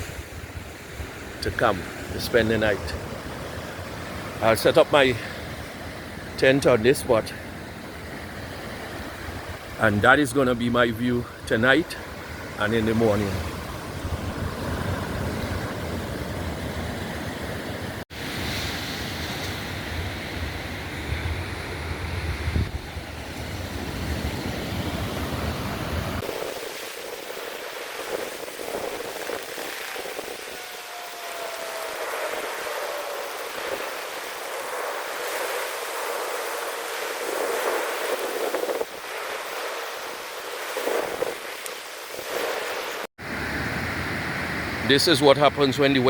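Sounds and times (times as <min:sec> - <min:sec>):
wind rumbling on microphone: 0:00.0 - 0:06.4, 0:07.3 - 0:10.2, 0:11.2 - 0:44.9
sea surf washing onto beach: 0:00.0 - 0:46.0
faint falling whine: 0:29.6 - 0:37.2.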